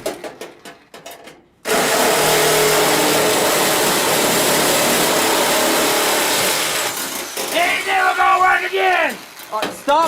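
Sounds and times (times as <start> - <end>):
handheld power tool running: 1.6 - 10.0.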